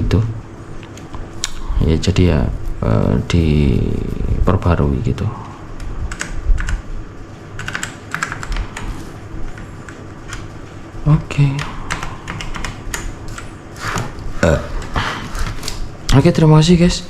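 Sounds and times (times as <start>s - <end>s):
computer keyboard typing: 5.4s - 6.9s, 7.6s - 13.6s.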